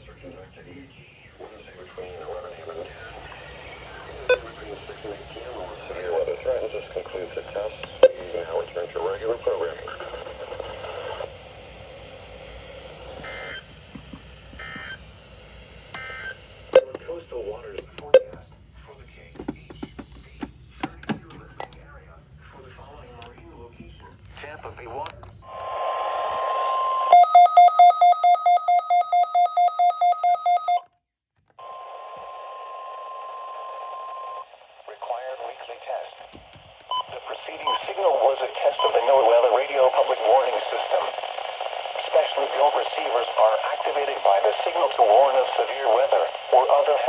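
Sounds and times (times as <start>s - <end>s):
fast electronic beeps: 27.1s - 30.8s, 36.9s - 37.9s
short data-tone bursts: 27.1s - 30.8s
radio receiver hiss: 33.5s - 47.0s.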